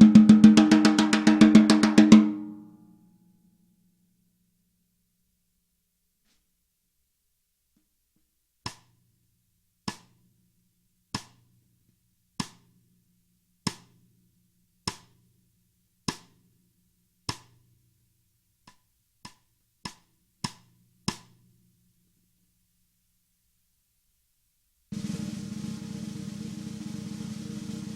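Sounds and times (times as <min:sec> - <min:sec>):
snare drum hits: 0:00.0 - 0:02.4, 0:24.9 - 0:27.9.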